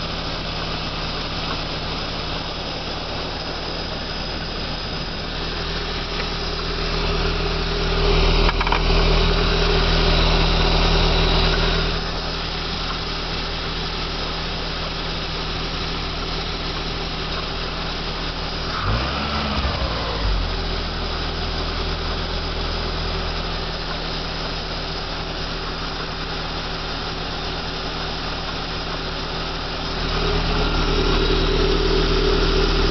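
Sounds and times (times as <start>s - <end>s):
car engine idling: 0.0s - 32.9s
faint intake gurgling: 0.1s - 18.8s.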